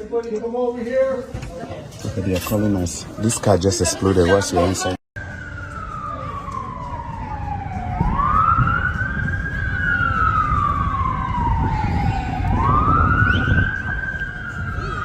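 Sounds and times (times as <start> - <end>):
emergency siren wailing: 5.2 - 15.0.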